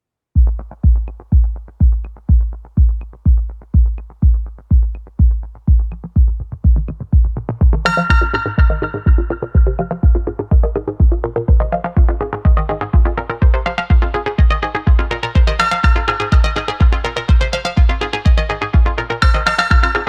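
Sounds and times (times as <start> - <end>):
electronic dance music: 0.4 - 20.0
heavy kick drum beat: 0.4 - 20.0
sustained synth chords: 5.8 - 20.0.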